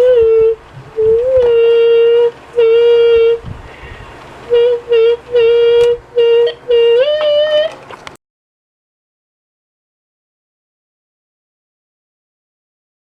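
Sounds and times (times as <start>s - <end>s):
girl singing long notes: 0.0s - 3.5s, 4.5s - 7.8s.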